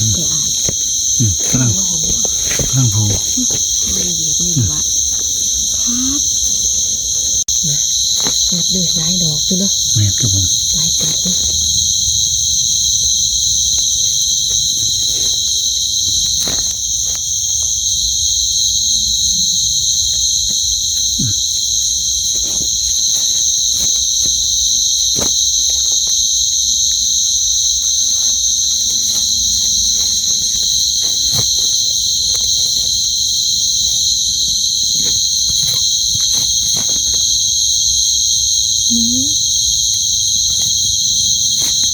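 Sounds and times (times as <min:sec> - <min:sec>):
crickets trilling: 0:00.0 - 0:41.9
small clicks and rustles: 0:27.9 - 0:37.6, 0:40.2 - 0:41.9.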